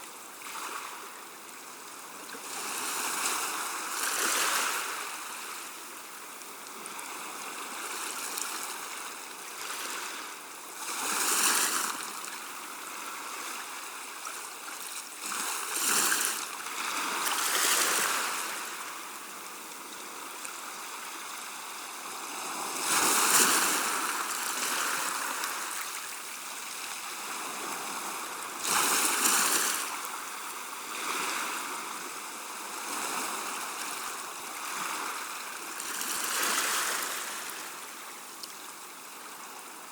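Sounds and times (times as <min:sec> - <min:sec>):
sea waves washing on shore: 0:00.0 - 0:39.9.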